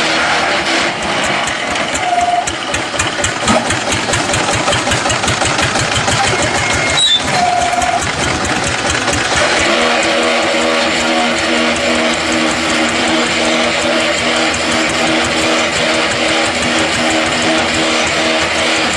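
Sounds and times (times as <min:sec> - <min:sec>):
block-making machine clattering: 0:00.6 - 0:18.9
short steady tones: 0:01.8 - 0:03.7, 0:05.9 - 0:18.9.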